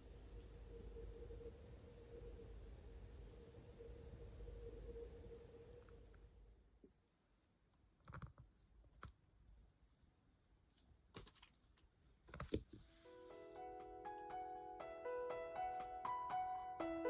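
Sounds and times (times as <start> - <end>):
soft piano background music: 12.9 - 17.0.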